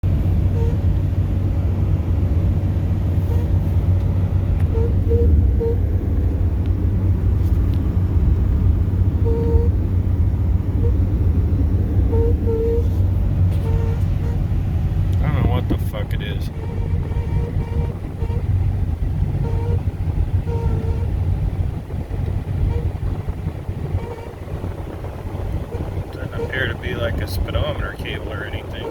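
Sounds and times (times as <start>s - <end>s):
vehicle rumbling: 0.0s - 28.9s
short single-pitched squeaks: 3.2s - 5.8s, 12.2s - 14.4s, 16.4s - 18.5s.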